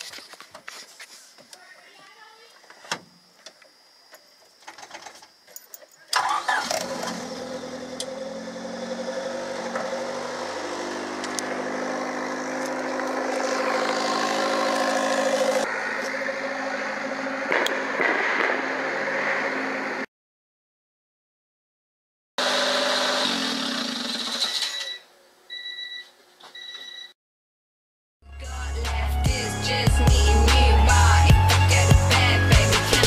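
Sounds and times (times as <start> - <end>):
engine cranking and starting: 6.1 - 16.2, 22.4 - 25.0.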